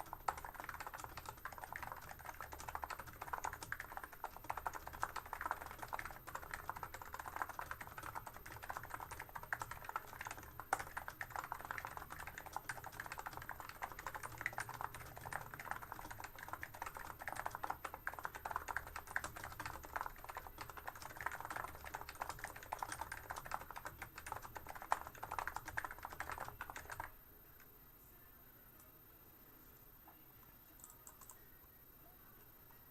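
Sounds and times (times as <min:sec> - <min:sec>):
fast typing on a keyboard: 0:00.0 - 0:27.1.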